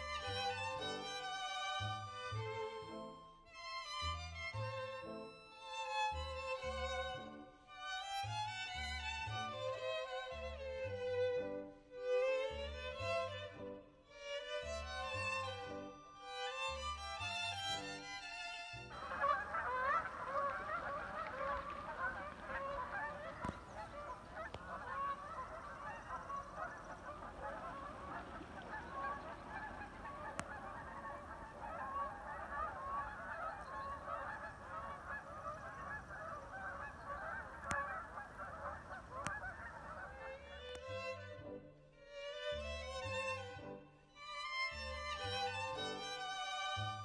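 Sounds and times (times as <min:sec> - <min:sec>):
flock of birds honking: 0:19.0 - 0:40.7
faint clicks: 0:19.0 - 0:40.8.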